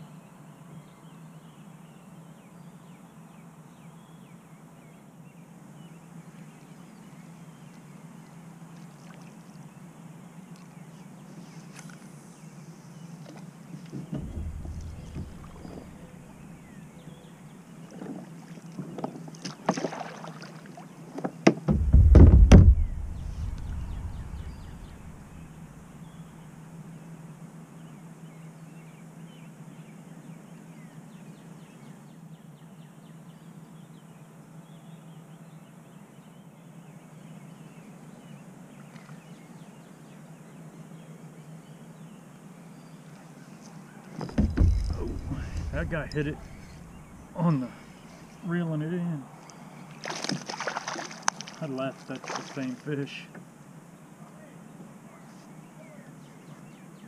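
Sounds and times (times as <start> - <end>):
gear rattling against kayak hull: 13.9 - 16.8, 21.2 - 25.8, 44.2 - 48.3
loud deep thump: 14.0 - 16.9, 21.5 - 26.4, 44.2 - 48.1
steady low hum: 14.0 - 17.8, 21.7 - 26.9, 44.2 - 48.6.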